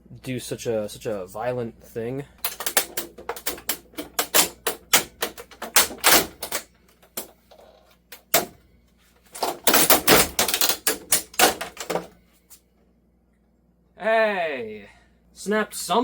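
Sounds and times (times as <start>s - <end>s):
plastic cracking and rattling: 2.4s - 8.6s, 9.3s - 12.2s.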